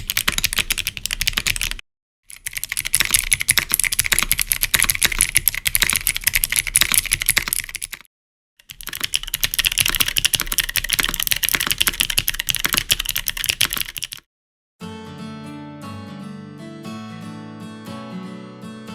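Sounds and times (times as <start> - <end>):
fast typing on mechanical keyboard: 0.0 - 14.2.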